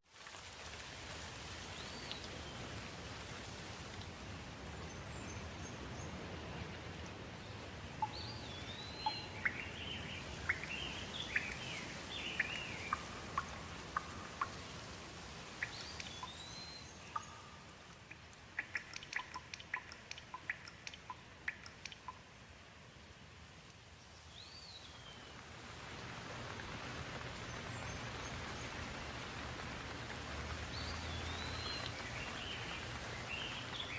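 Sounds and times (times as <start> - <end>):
rain hissing: 0.0 - 33.9
birds calling: 8.0 - 14.8, 30.6 - 33.9.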